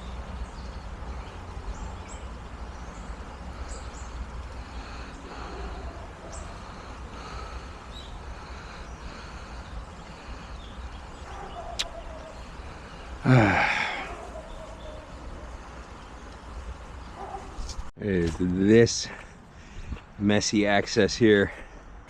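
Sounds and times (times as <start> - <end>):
person sighing: 13.2 - 14.3.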